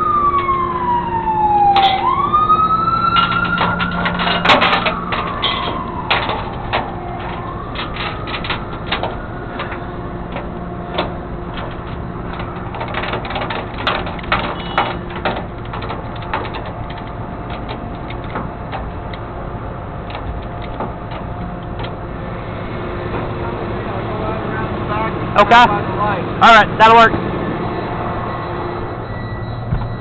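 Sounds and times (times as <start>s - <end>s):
siren wailing: 0.0s - 16.5s
clicks and rattles: 1.7s - 2.1s, 2.9s - 22.2s.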